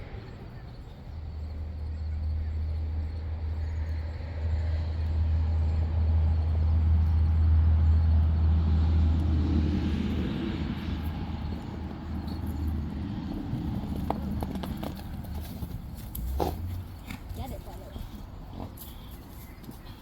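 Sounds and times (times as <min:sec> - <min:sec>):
vehicle engine rumble: 0:00.0 - 0:20.0.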